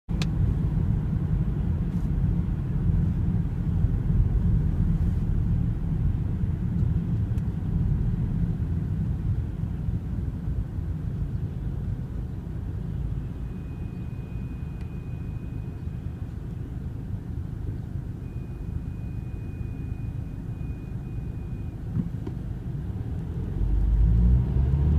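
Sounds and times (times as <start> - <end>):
car road and drivetrain rumble: 0.1 - 24.9
high-pitched brake squeal: 13.2 - 16.2, 18.2 - 21.8.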